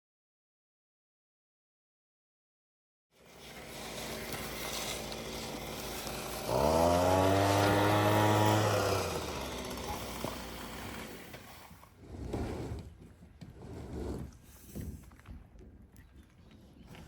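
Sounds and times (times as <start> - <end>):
engine revving: 3.5 - 11.5.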